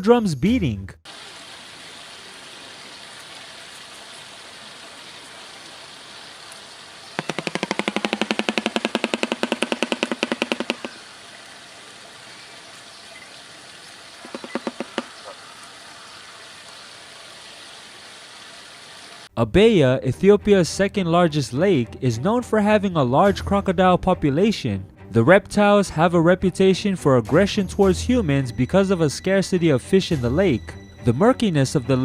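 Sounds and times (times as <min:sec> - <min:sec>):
bird clattering its bill: 0:07.2 - 0:11.0, 0:14.2 - 0:15.4.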